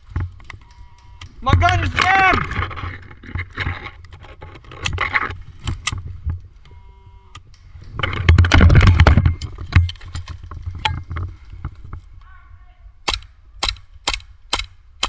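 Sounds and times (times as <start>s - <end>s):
gear rattling and scraping: 0.0s - 6.7s, 7.3s - 12.2s
sharp clicks: 0.0s - 12.3s, 13.0s - 15.0s
rustling: 0.0s - 14.0s.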